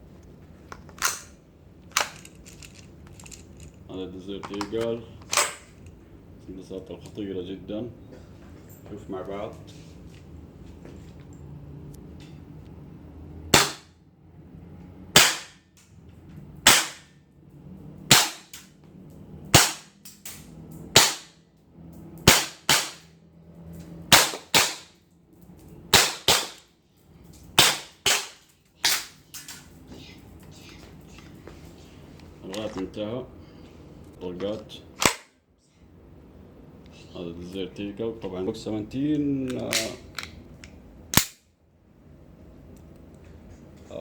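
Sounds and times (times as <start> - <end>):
airsoft pistol shots: 13.5 - 13.9, 15.1 - 15.6, 16.6 - 17.1, 18.1 - 18.7, 19.5 - 20.0, 20.9 - 21.4, 22.2 - 23.1, 24.1 - 24.9, 25.9 - 26.6, 27.6 - 29.1, 35.0 - 35.4.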